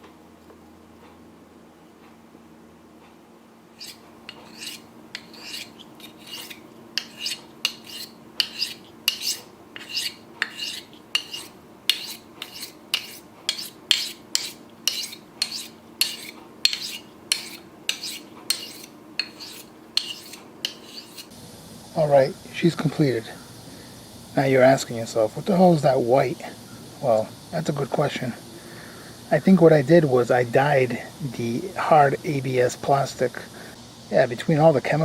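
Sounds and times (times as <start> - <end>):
knife blade sharpening strokes: 3.8 - 21.3.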